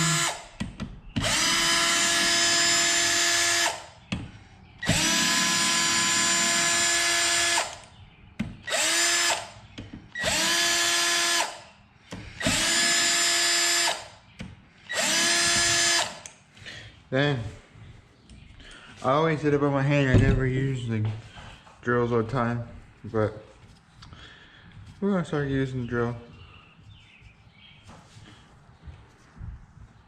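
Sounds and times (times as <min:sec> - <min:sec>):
cordless drill backing out bolts: 0:01.2 - 0:03.9, 0:04.8 - 0:07.9, 0:08.6 - 0:11.6, 0:12.2 - 0:14.1, 0:14.9 - 0:16.3.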